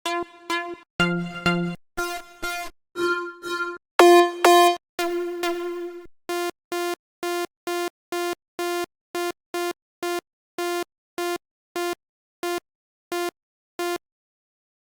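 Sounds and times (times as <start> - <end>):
bright synth note: 0.0 - 6.1
buzzy synth stabs: 0.0 - 6.1.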